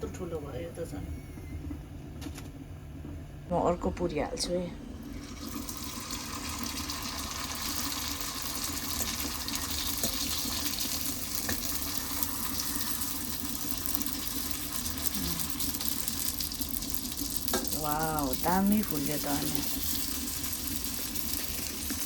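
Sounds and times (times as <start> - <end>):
deep-frying sizzle: 5.0 - 22.0.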